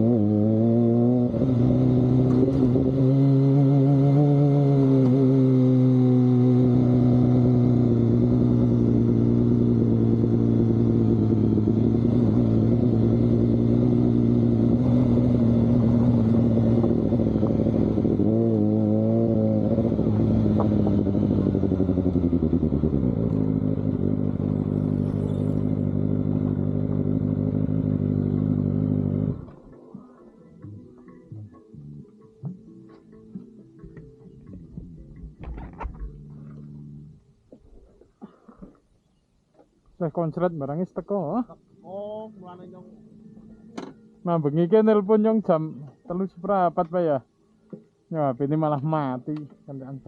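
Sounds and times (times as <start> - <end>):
motorcycle engine revving: 0.0 - 32.0, 34.4 - 37.3.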